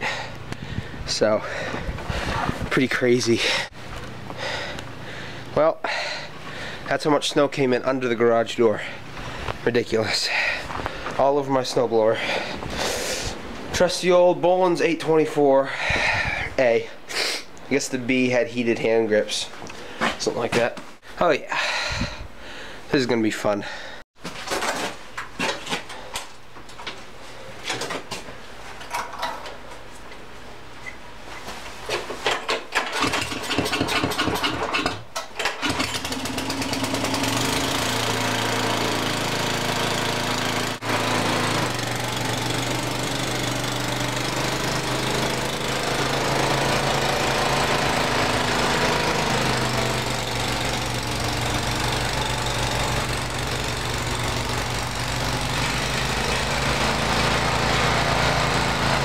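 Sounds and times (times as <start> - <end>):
snowblower engine cranking and running: 32.2 - 59.0.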